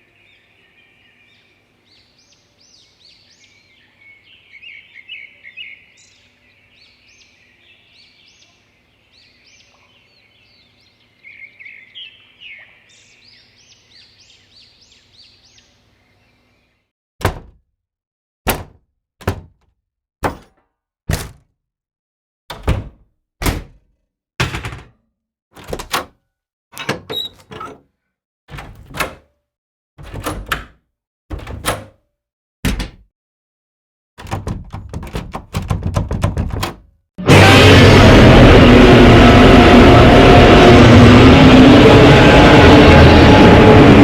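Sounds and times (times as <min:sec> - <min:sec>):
small birds chirping: 0:00.0 - 0:16.8
loud thunks: 0:17.2 - 0:17.6, 0:18.5 - 0:19.6, 0:32.6 - 0:33.0, 0:34.2 - 0:36.8.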